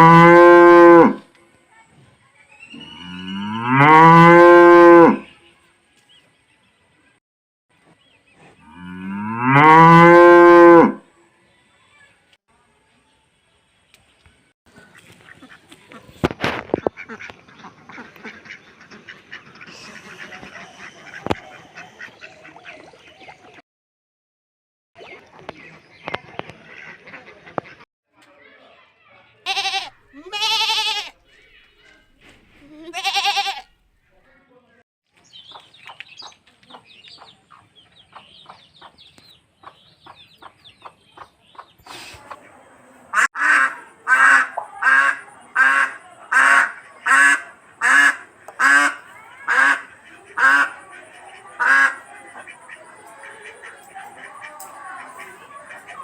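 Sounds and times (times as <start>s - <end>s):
high chirping calls: 2.5s - 3.6s
chickens clucking: 14.7s - 23.6s, 35.2s - 56.0s
ducks quacking: 14.7s - 23.6s, 25.0s - 27.8s, 39.6s - 56.0s.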